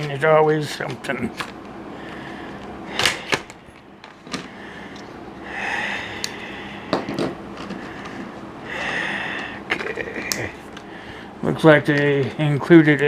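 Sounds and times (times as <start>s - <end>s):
packaging clicks and snaps: 3.0s - 4.5s.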